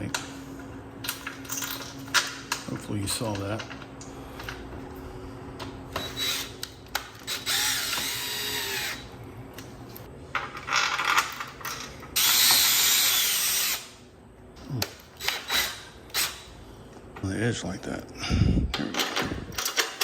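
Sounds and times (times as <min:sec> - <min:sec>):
power drill driving screws: 0:06.0 - 0:06.6, 0:07.2 - 0:09.1, 0:12.2 - 0:13.9, 0:15.2 - 0:16.5.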